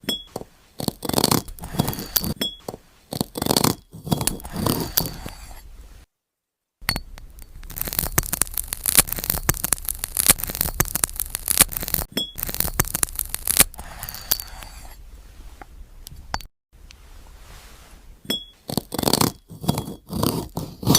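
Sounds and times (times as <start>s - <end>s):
knife crunching through glass: 0.8s - 2.4s, 3.1s - 5.3s, 6.9s - 14.7s, 18.7s - 20.9s.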